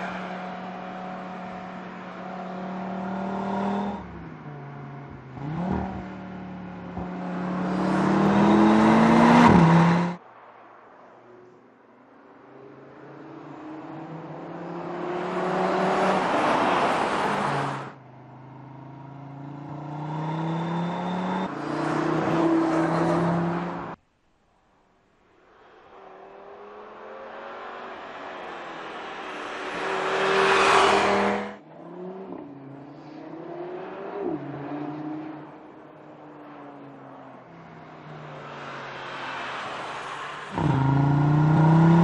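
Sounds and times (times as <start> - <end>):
car engine accelerating hard: 40.6 - 42.0.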